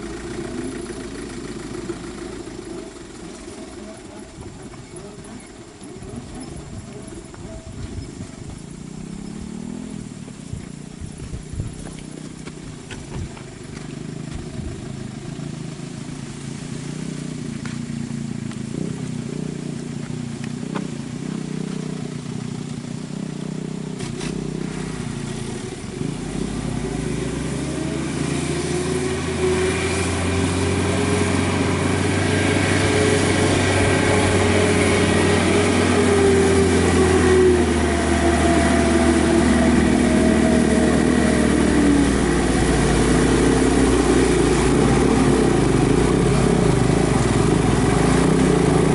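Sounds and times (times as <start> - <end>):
diesel truck engine labouring: 0.0 - 48.9.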